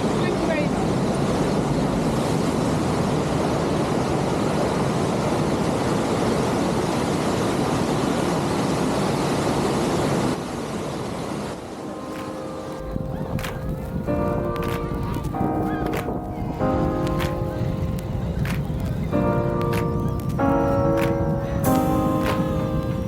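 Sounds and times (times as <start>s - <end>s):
waterfall rushing: 21.0s - 23.0s.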